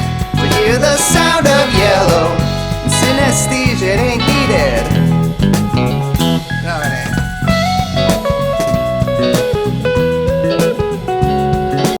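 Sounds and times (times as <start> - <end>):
bass guitar: 0.0 - 12.0
drum kit: 0.0 - 12.0
electric guitar melody with bent notes: 0.0 - 12.0.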